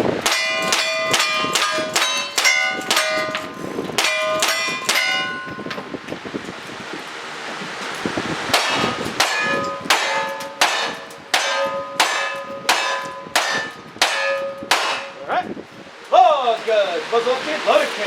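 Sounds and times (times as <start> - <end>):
steel target ringing: 0.0 - 6.0, 8.5 - 15.6.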